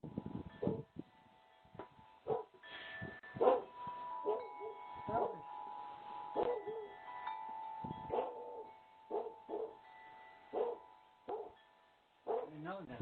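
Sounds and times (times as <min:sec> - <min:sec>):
steady high ringing tone: 0:00.0 - 0:12.4
dog barking: 0:02.3 - 0:02.5, 0:03.4 - 0:03.7, 0:08.1 - 0:09.8, 0:10.6 - 0:11.6, 0:12.3 - 0:12.6.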